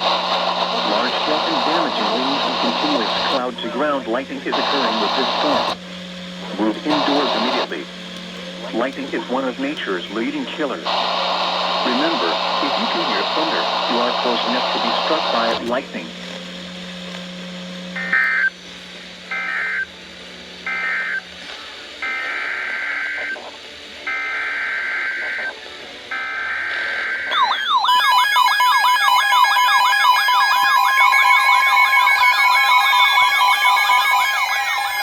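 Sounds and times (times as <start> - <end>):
buzzy digital data bursts: 0.0 - 5.8, 10.6 - 15.6
warbling siren-like alert tone: 26.2 - 35.0.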